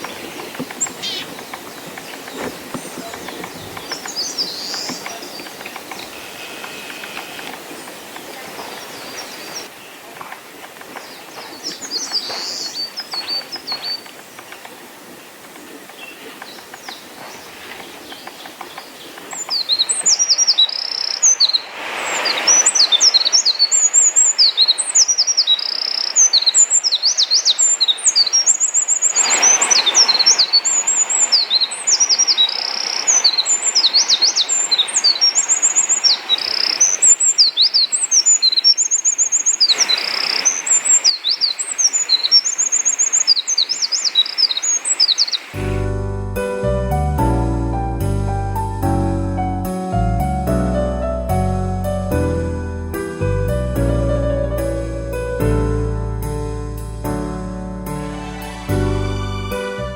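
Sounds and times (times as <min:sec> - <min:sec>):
wren singing rapid trills: 0:00.0 - 0:07.3, 0:22.2 - 0:45.8
quiet bird calls: 0:00.0 - 0:45.9
steady hiss: 0:20.8 - 0:26.2.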